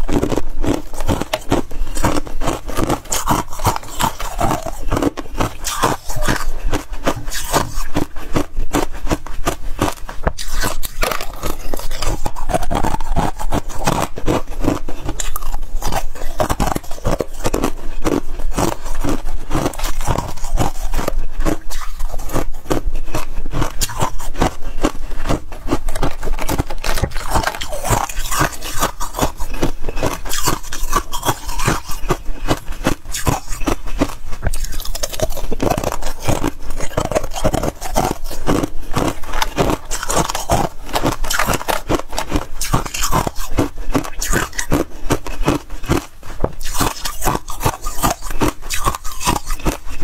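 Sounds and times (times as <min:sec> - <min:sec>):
frost being chewed: 0:00.0 - 0:50.0.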